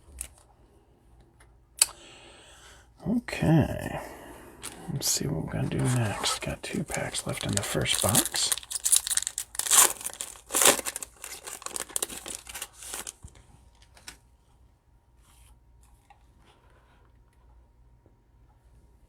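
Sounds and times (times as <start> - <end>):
foil wrapper crinkling: 5.6 - 14.2
pack being torn open: 5.8 - 14.2.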